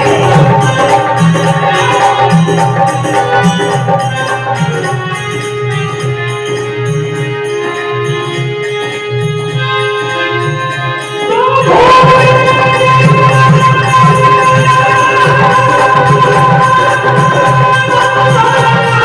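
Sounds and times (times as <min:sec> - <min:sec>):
drum and tambourine beat: 0:00.0 - 0:07.3, 0:12.0 - 0:19.0
held keyboard notes: 0:00.0 - 0:19.0.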